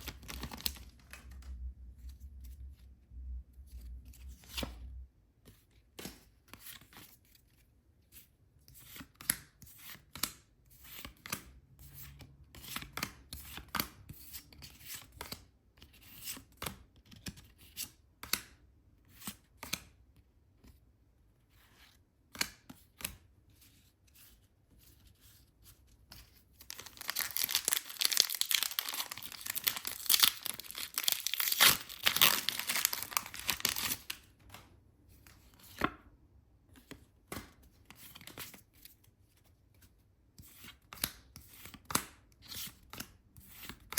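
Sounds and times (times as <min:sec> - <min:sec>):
wrapper tearing open: 0:26.7 - 0:34.2
packaging crinkling and clicking: 0:26.7 - 0:34.3.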